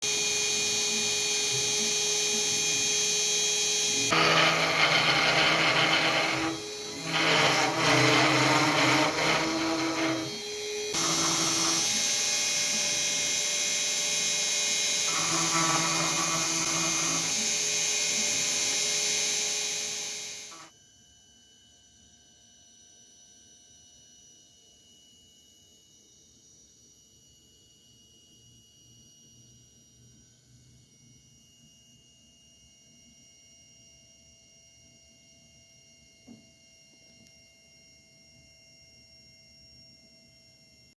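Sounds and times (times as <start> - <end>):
router spindle whining: 0.1 - 20.7.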